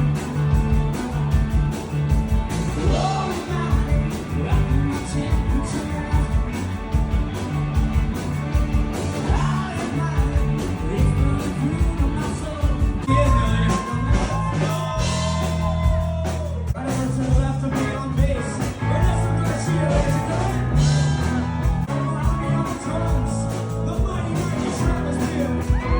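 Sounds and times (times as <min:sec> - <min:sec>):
rock band playing: 0:00.0 - 0:25.9
person singing: 0:02.8 - 0:06.7, 0:09.2 - 0:25.9.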